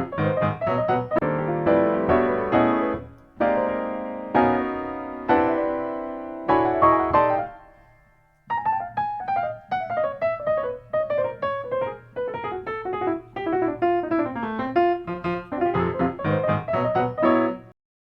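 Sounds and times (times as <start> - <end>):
piano music: 0.0 - 17.8.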